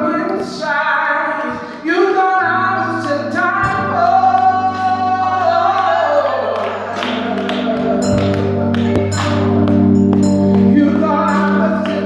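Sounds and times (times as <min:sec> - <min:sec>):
woman singing gospel song: 0:00.0 - 0:09.4
sustained instrumental chords: 0:02.5 - 0:12.0.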